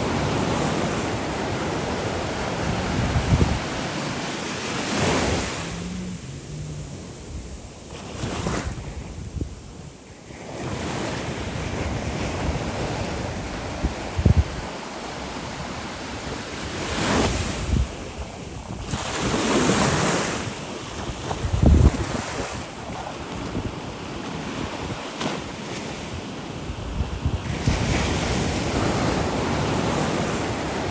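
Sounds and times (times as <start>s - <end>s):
wind buffeting microphone: 0.0s - 10.0s, 11.4s - 25.1s
sea waves breaking on shore: 0.0s - 30.9s.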